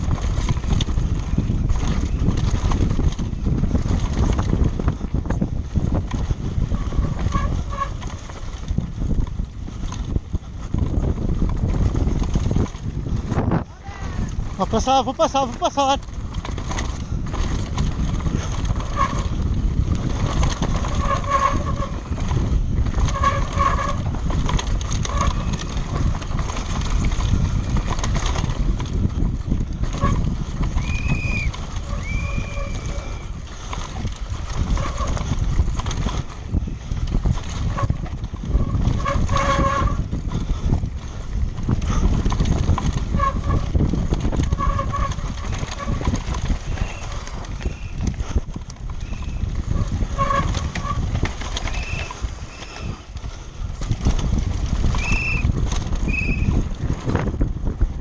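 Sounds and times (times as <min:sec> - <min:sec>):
bike rattling over rough ground: 0:00.0 - 0:58.0
wind rush: 0:00.0 - 0:58.0
short squeaks: 0:06.8 - 0:08.4, 0:20.6 - 0:22.3, 0:22.9 - 0:24.1, 0:29.9 - 0:33.5, 0:44.4 - 0:48.2, 0:49.0 - 0:53.2, 0:54.9 - 0:56.6.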